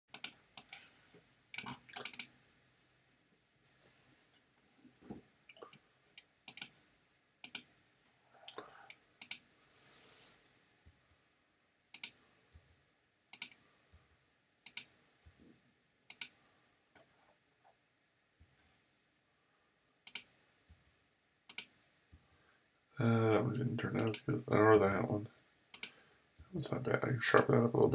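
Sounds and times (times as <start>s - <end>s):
computer mouse clicking: 0.1s - 0.8s, 1.6s - 2.3s, 6.5s - 6.8s, 7.4s - 7.7s, 8.5s - 9.4s, 11.9s - 15.5s, 16.1s - 16.4s, 20.1s - 22.4s, 24.0s - 24.8s, 25.8s - 26.5s.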